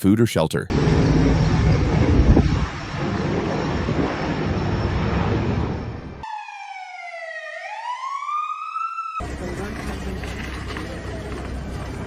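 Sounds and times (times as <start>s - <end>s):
loud rushing noise: 0.7s - 6.2s
emergency vehicle siren wailing: 0.9s - 12.0s.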